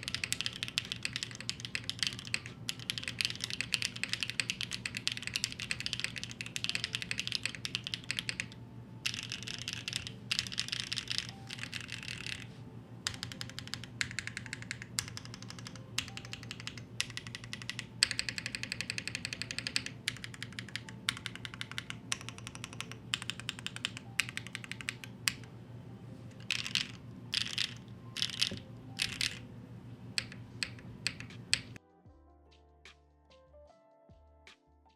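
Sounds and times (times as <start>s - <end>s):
mechanical keyboard typing: 0.0s - 25.5s, 26.4s - 29.4s, 30.2s - 31.8s
faint low hum: 0.0s - 31.8s.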